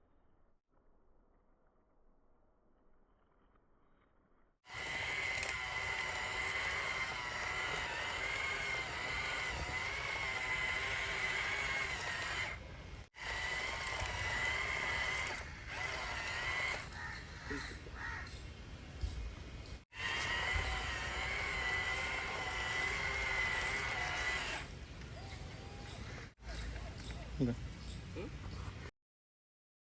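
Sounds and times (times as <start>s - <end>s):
toy motor whining: 4.7s - 17.1s, 19.9s - 26.8s.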